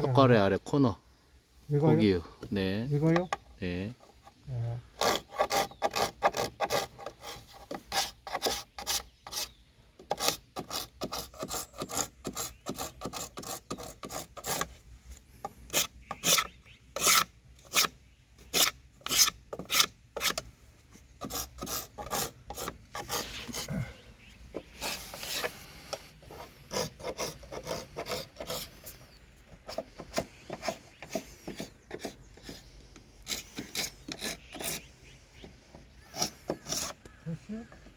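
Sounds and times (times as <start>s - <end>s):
knife rasping on wood: 5.0s - 9.5s, 10.1s - 14.7s, 15.7s - 17.9s, 21.2s - 23.9s, 24.6s - 34.9s, 36.0s - 37.2s.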